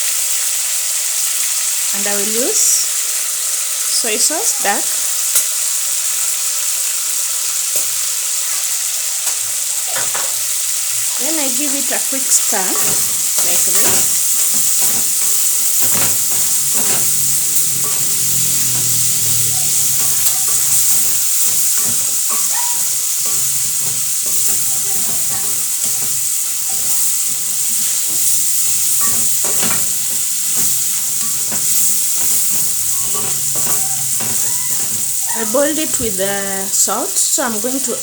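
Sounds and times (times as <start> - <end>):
food sizzling in oil: 0.0 - 38.0
spoon knocking against a pot: 12.6 - 26.9, 27.8 - 36.2.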